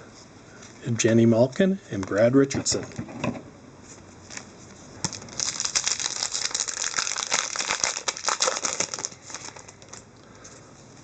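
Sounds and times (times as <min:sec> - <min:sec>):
foil wrapper crinkling: 0:04.3 - 0:10.1.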